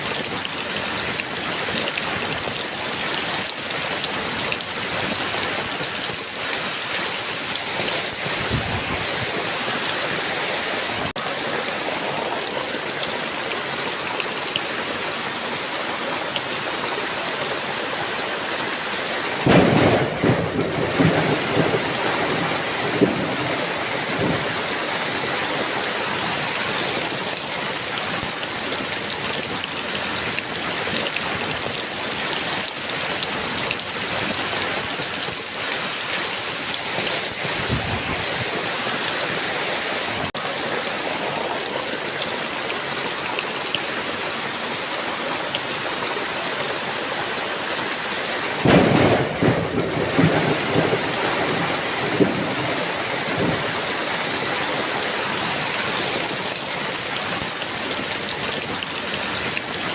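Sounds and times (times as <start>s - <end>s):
heavy rain falling: 0.0s - 59.9s
thunder rumbling: 19.4s - 25.1s, 48.6s - 54.0s.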